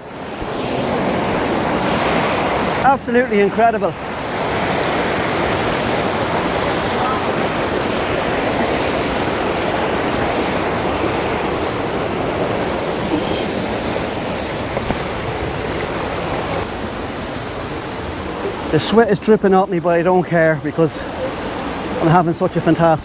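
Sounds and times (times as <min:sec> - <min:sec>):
waterfall rushing: 0:00.0 - 0:22.9
faint high steady tone: 0:05.2 - 0:23.0.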